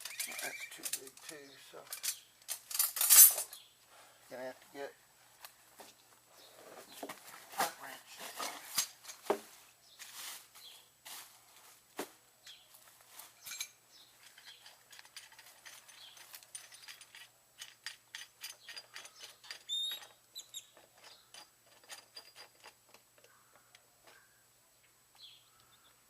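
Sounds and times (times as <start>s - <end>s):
hand tools clinking: 0.0s - 3.6s, 13.2s - 23.4s.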